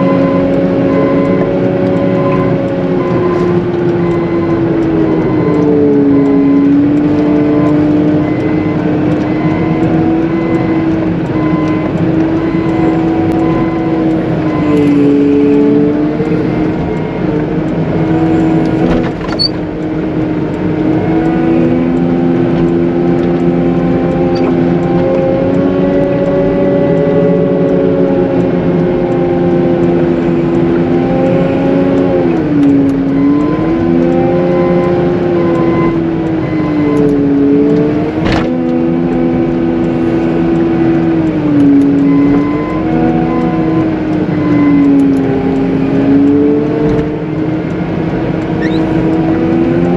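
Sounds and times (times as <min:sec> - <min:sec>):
loader diesel engine under load: 0:00.0 - 0:49.9.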